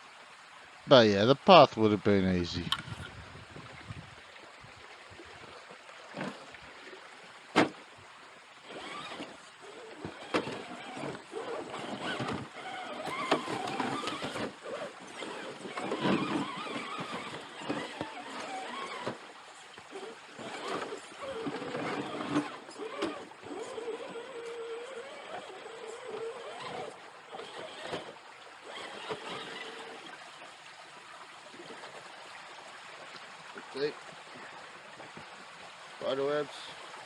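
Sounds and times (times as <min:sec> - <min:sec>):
toy truck scraping over rocks: 0:02.6 - 0:03.2, 0:06.1 - 0:06.6, 0:08.6 - 0:30.2.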